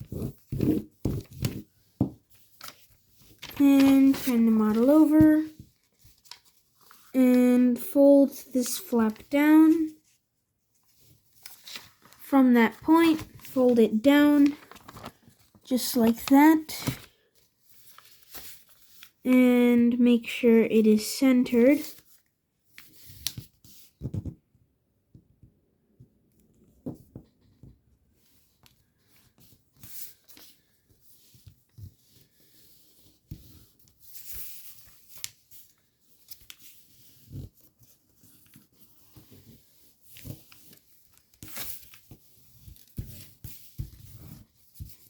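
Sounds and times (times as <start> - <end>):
paper crinkling and rustling: 0.0 - 19.2, 28.3 - 45.0.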